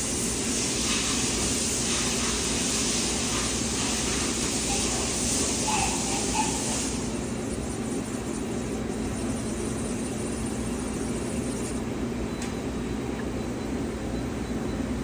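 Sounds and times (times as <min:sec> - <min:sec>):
hissing spray of air: 0:00.0 - 0:07.2
machine hum and running noise: 0:00.0 - 0:15.0.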